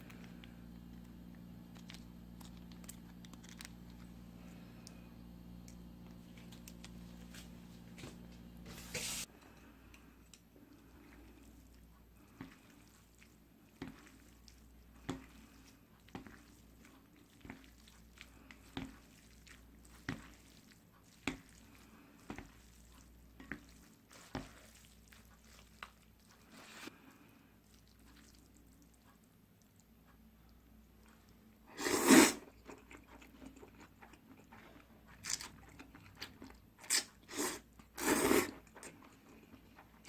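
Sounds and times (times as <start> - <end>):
chewing noodles: 0.0 - 5.0, 9.3 - 40.0.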